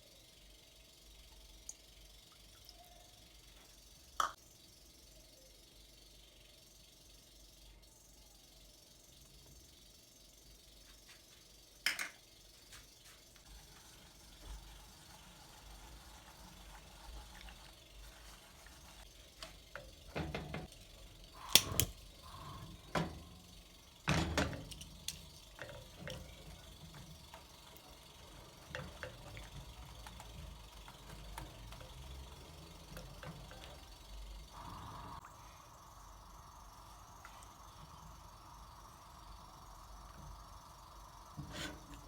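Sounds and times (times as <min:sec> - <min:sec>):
utensils clicking and knocking: 0:16.4 - 0:35.2.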